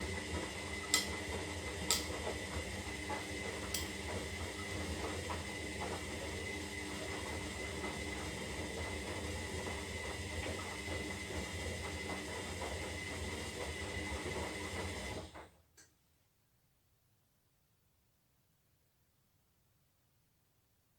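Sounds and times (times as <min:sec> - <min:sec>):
washing machine motor hum: 0:00.0 - 0:15.5.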